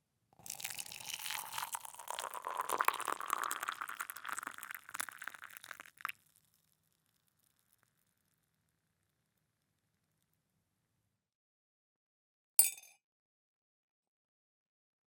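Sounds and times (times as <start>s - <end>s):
water drip: 0.4s - 6.6s
water pouring into a glass: 0.4s - 7.8s.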